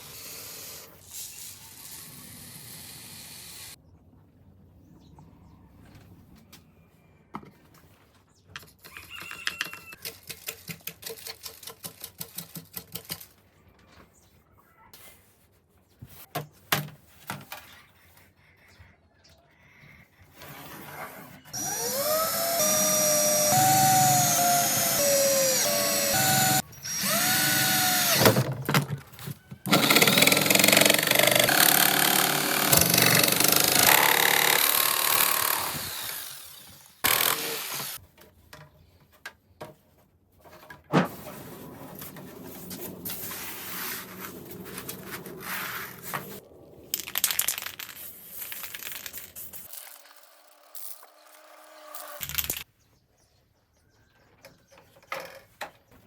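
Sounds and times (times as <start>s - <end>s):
power drill whining: 21.6s - 28.5s, 29.7s - 38.0s.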